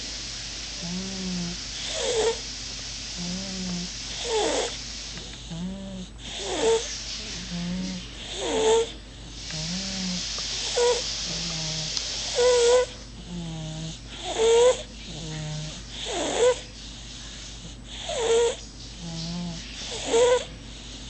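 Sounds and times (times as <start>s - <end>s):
baby snoring: 0.8s - 2.4s, 3.2s - 4.8s, 5.4s - 16.7s, 17.6s - 21.0s.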